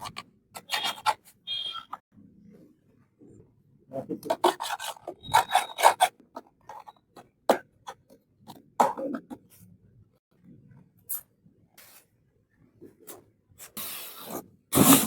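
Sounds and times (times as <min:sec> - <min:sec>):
scratchy rubbing of packaging: 0:00.0 - 0:02.0, 0:04.2 - 0:07.3.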